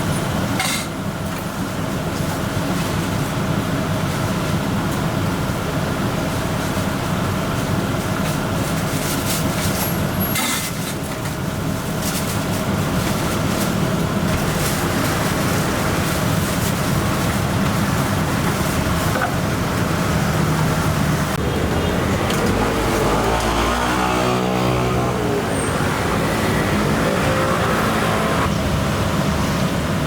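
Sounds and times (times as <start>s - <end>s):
loud mechanical roar: 9.8s - 30.0s
engine passing by: 18.5s - 30.0s.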